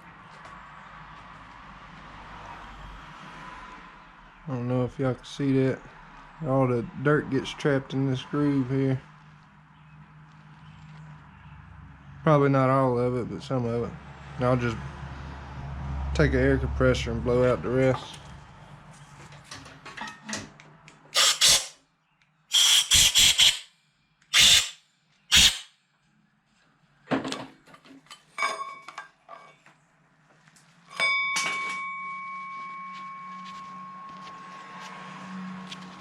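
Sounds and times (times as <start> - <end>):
compressed air blasts: 21.2 - 21.7, 22.5 - 23.7, 24.3 - 25.7
metallic clank with ringing tone: 28.4 - 29.6, 30.9 - 34.7.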